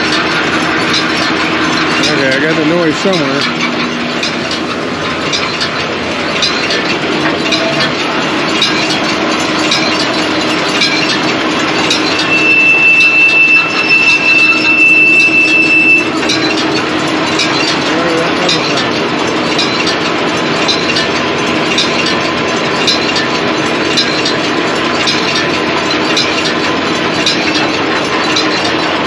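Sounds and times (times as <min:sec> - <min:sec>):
high steady squeal: 0:00.0 - 0:20.1
baler chains and rollers clattering: 0:00.0 - 0:29.0.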